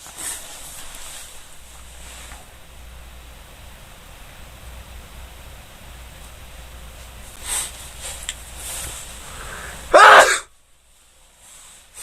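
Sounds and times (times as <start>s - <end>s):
quick breaths in: 9.2s - 10.5s
man sneezing: 9.9s - 10.5s.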